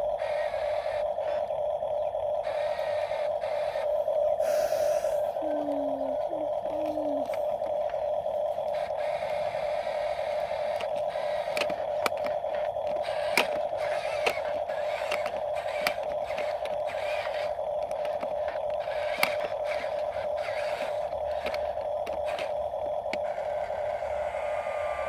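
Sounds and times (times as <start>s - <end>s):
small electric motor whirring: 0.0s - 25.0s
plastic parts clicking and knocking: 10.5s - 23.7s.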